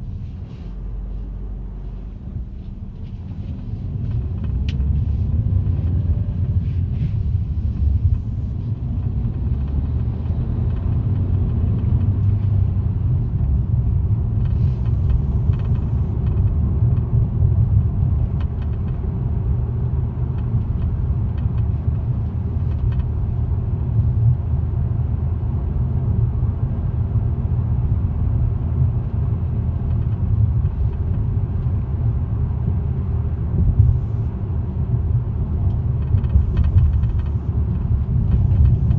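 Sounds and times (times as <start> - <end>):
car low rumble: 0.0 - 38.9
rattling ticks: 36.1 - 37.5.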